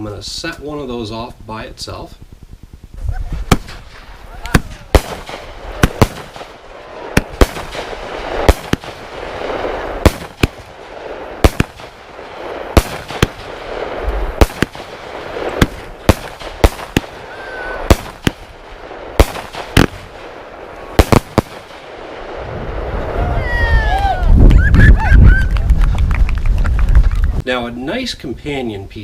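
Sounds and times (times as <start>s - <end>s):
hissing crackle of fireworks: 2.2s - 24.2s
firework bangs: 3.3s - 23.8s.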